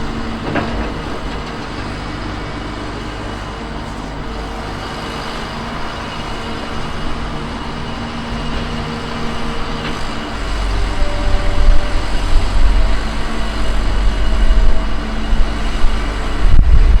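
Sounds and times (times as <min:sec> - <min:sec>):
deep low engine sound: 0:00.0 - 0:17.0
heavy machinery engines running: 0:00.0 - 0:17.0.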